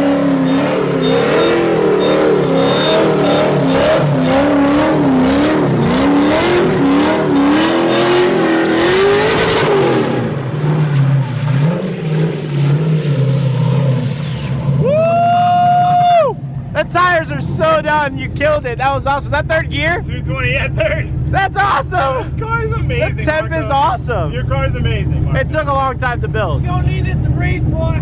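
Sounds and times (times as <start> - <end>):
car engine revving while drifting: 0.0 - 14.9
tires spinning: 0.0 - 28.0.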